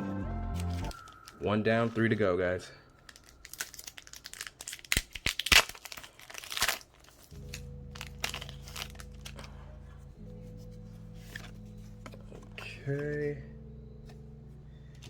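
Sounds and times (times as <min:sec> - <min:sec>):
low background music: 0:00.0 - 0:04.4, 0:07.2 - 0:15.0
foil wrapper crinkling and tearing: 0:03.0 - 0:09.6.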